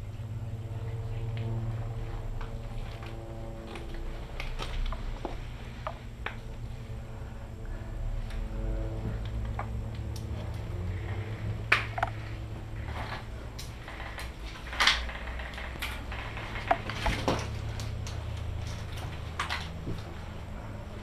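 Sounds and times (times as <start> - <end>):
low rumble: 0.0 - 21.0
gear clicking and knocking: 9.1 - 21.0.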